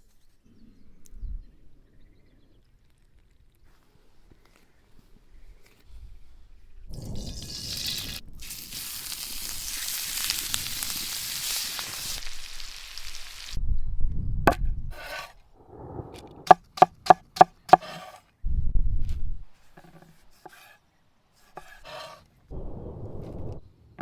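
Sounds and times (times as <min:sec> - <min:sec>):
food sizzling in a hot pan: 0:07.0 - 0:13.6
knife chopping on cutting board: 0:16.5 - 0:18.2.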